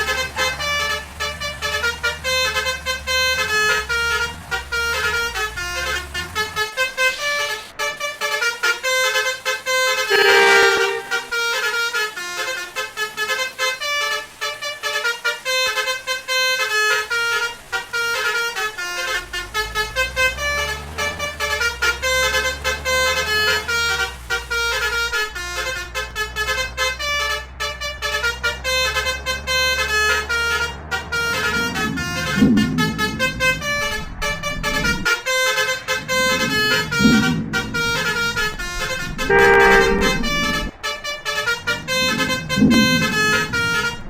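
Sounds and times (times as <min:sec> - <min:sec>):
long horn blast: 0:00.0 - 0:44.0
multi-tone horn playing a tune: 0:00.0 - 0:44.0
vehicle engine running: 0:00.0 - 0:44.0.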